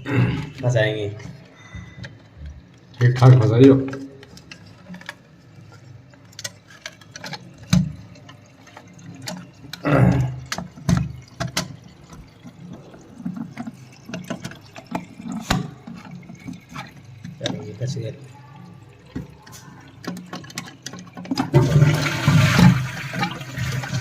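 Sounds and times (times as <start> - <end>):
water dripping and splashing: 0.0 - 24.0
plastic parts clicking and knocking: 0.4 - 18.1, 19.0 - 23.8.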